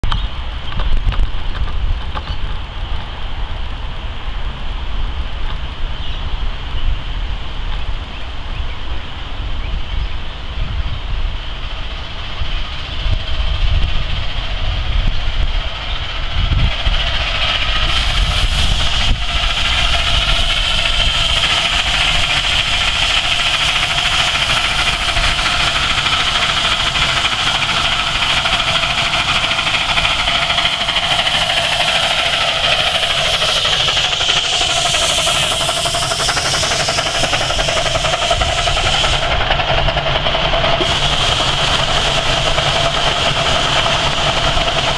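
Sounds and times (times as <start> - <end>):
rumble of carriages: 0.0 - 44.9
steam locomotive exhaust beating: 0.0 - 44.9
steam hissing: 10.1 - 44.9.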